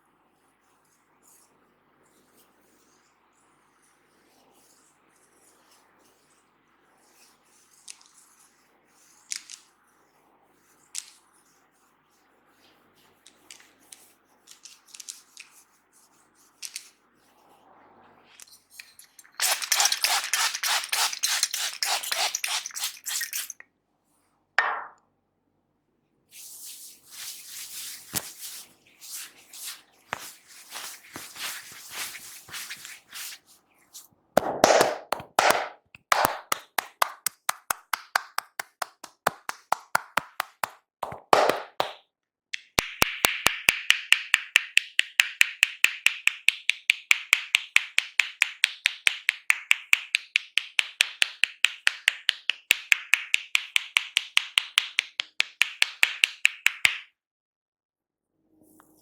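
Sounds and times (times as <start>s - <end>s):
hands tapping and slapping: 27.9s - 33.4s, 34.4s - 42.0s, 42.6s - 57.1s.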